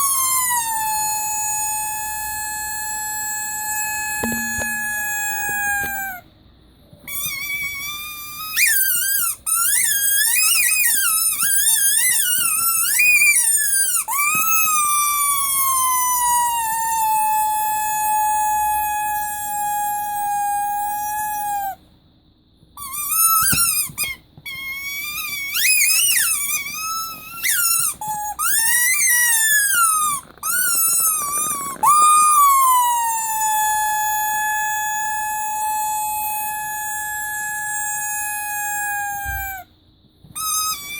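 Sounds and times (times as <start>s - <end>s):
squeaky toy squeaking: 0.0s - 6.2s, 7.1s - 18.3s, 22.8s - 39.6s, 40.4s - 40.9s
whistling tone dipping in pitch: 2.2s - 6.2s.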